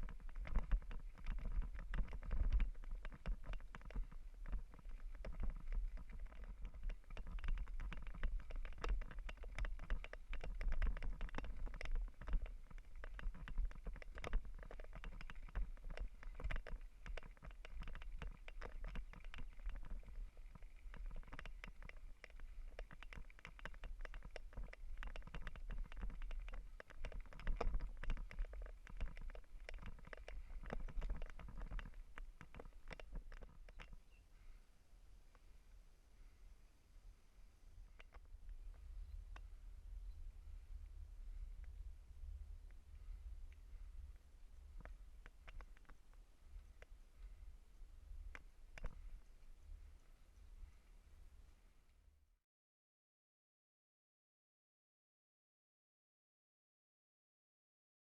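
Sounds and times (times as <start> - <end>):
bike rattling and clicking: 0.0 - 34.1, 44.7 - 46.0.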